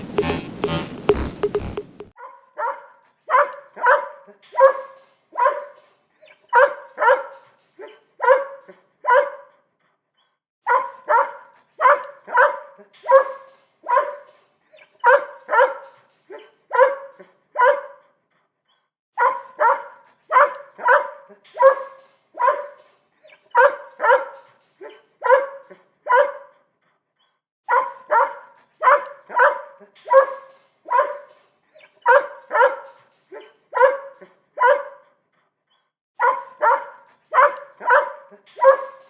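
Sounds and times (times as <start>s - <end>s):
small dog barking: 2.2s - 5.8s, 6.6s - 9.5s, 10.7s - 14.3s, 15.0s - 18.0s, 19.2s - 22.8s, 23.5s - 26.5s, 27.7s - 31.3s, 32.1s - 35.0s, 36.2s - 39.0s.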